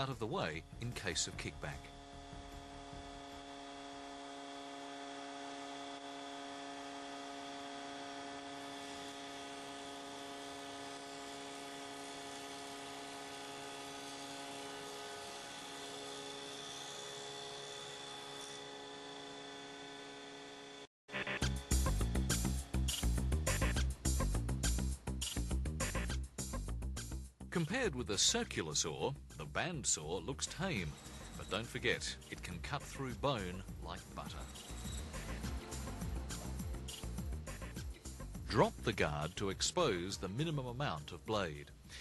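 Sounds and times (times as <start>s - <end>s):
bandsaw running: 0.0s - 26.2s, 30.0s - 41.0s.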